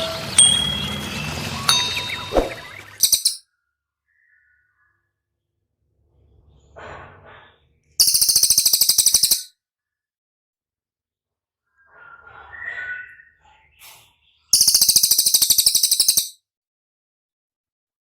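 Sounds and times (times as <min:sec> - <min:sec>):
songbird singing high trill: 0:00.4 - 0:03.4, 0:08.0 - 0:09.4, 0:14.6 - 0:16.3.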